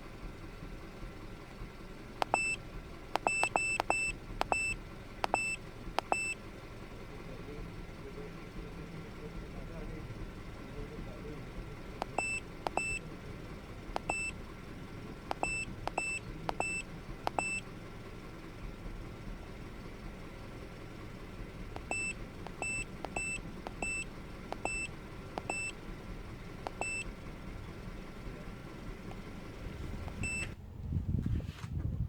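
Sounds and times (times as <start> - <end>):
car engine idling: 0.0 - 30.8
button clicks: 2.2 - 2.6, 3.2 - 6.4, 12.0 - 13.0, 14.0 - 14.3, 15.3 - 17.6, 21.8 - 25.7, 26.6 - 27.0.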